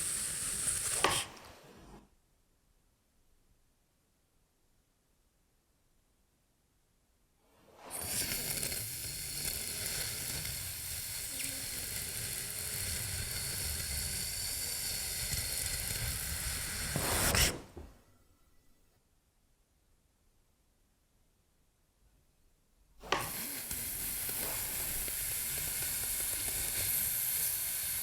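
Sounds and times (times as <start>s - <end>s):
loud steady hiss: 0.0s - 1.3s, 7.9s - 17.5s, 23.1s - 28.0s.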